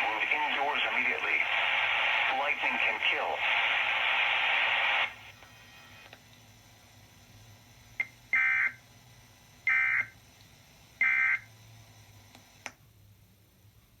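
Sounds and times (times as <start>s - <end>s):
radio click: 0.0s - 5.3s.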